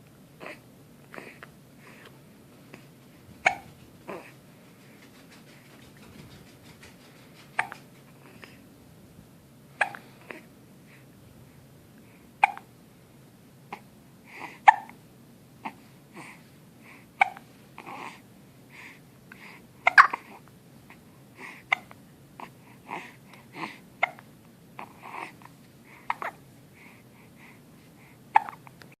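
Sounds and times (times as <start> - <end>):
sharp hiccups: 9.8 - 10.0, 12.4 - 12.7, 19.9 - 20.2, 28.4 - 28.6.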